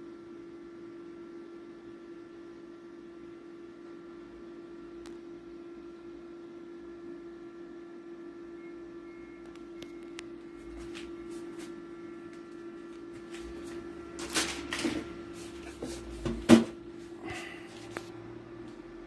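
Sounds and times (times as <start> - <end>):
steady hum: 0.0 - 19.0.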